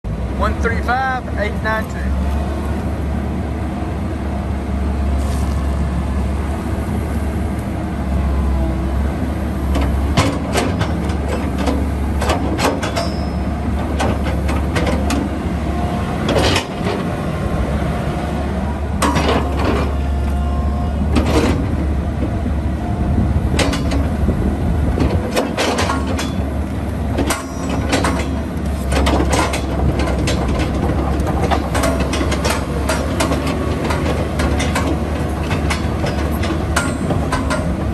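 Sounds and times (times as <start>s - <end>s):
excavator diesel engine humming: 0.1s - 37.9s
sharp metallic clanks and knocks: 9.8s - 15.3s, 16.3s - 17.1s, 19.0s - 20.0s, 23.5s - 24.2s, 25.0s - 37.9s.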